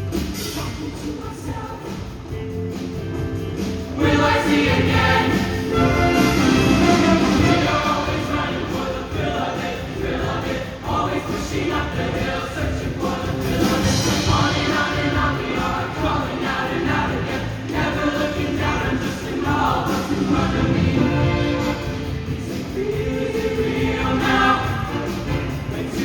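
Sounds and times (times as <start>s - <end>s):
instrumental accompaniment: 2.2s - 12.4s
choir singing: 3.8s - 26.0s.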